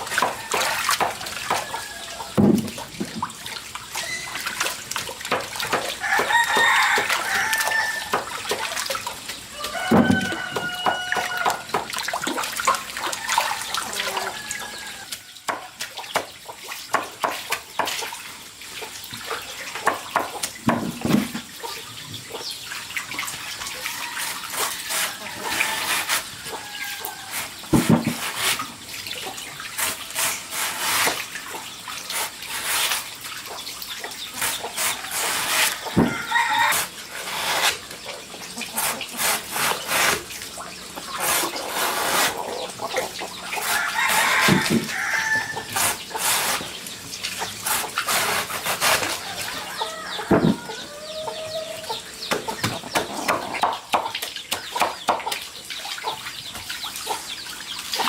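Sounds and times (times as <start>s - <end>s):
running water splashing: 0.0s - 58.0s
chickens clucking: 33.4s - 40.1s, 40.7s - 58.0s.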